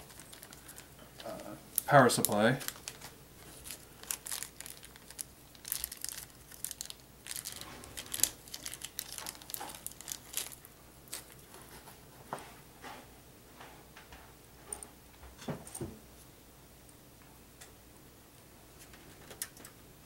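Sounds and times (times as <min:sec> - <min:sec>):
plastic packaging crinkling: 0:00.0 - 0:11.9.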